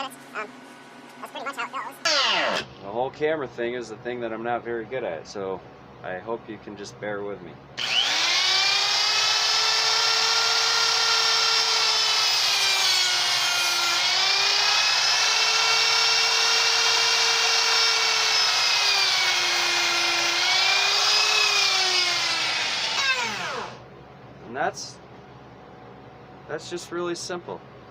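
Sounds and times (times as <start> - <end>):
chainsaw cutting wood: 2.0 - 2.7, 7.8 - 23.8.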